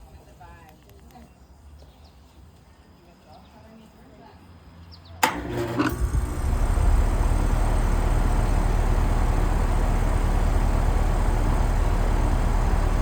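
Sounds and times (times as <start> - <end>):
compressor humming: 5.2 - 13.0
fan rushing air: 5.3 - 13.0.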